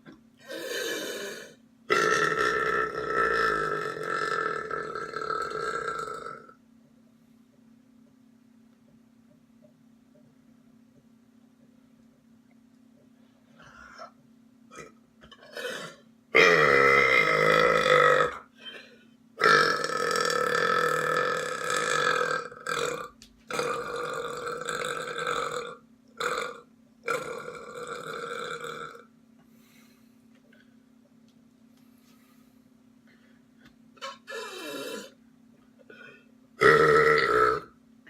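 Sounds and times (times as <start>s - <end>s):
person burping: 0.4s - 6.6s, 13.6s - 18.8s, 19.4s - 29.1s, 34.0s - 35.2s, 35.8s - 37.8s.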